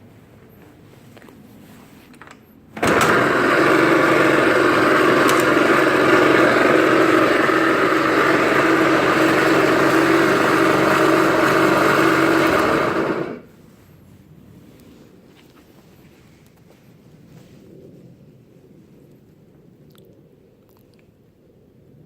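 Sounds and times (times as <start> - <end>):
scooter engine running: 2.8 - 13.5.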